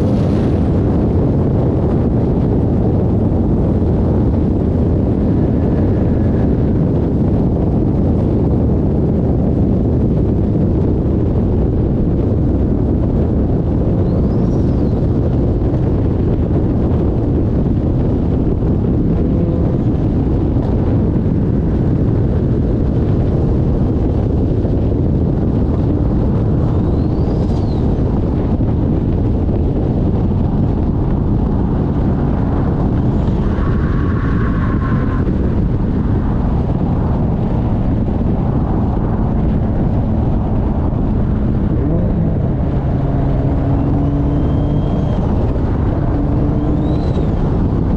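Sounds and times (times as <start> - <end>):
car engine under way: 0.0 - 47.9
road noise: 0.0 - 47.9
wind noise: 0.0 - 47.9
turbo whistle: 43.8 - 45.5, 46.6 - 47.4.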